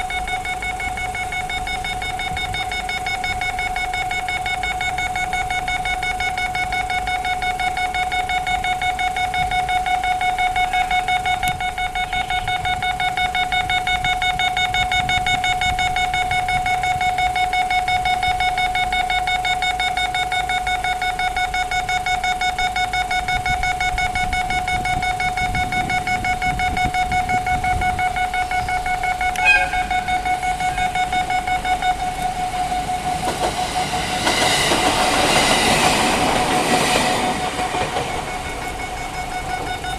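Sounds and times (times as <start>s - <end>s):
pulsing crossing alarm tone: 0.0s - 39.9s
train rumble: 23.4s - 39.9s
train wheel clatter: 29.3s - 39.9s.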